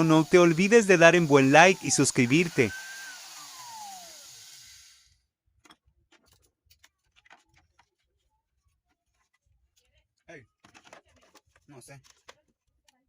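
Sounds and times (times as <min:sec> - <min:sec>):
blender motor spinning down: 0:00.0 - 0:05.2.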